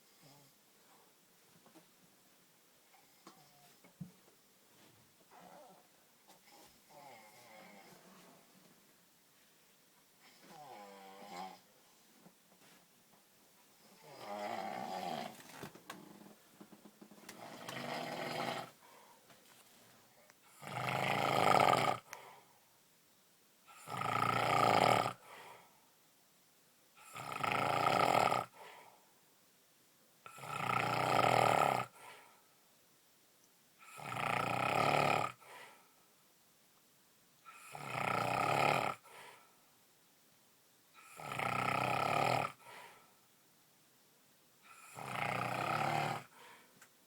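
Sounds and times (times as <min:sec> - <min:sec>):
man snoring loudly: 0:14.0 - 0:15.4, 0:17.4 - 0:18.8, 0:20.6 - 0:22.1, 0:23.8 - 0:25.2, 0:27.0 - 0:28.5, 0:30.3 - 0:32.0, 0:33.8 - 0:35.4, 0:37.6 - 0:39.0, 0:41.0 - 0:42.6, 0:44.8 - 0:46.3.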